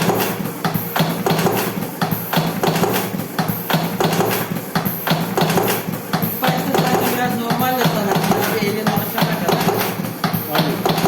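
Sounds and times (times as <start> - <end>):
machine clacking: 0.0 - 11.0
machine humming: 0.0 - 11.0.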